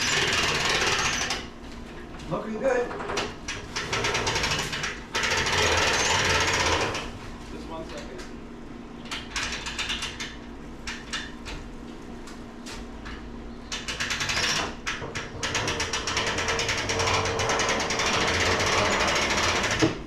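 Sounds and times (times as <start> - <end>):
winch ratcheting clicks: 9.0 - 11.3.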